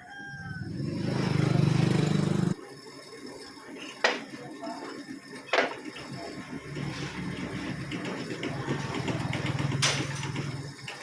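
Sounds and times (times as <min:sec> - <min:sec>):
machine humming: 0:00.6 - 0:02.6, 0:05.6 - 0:11.0.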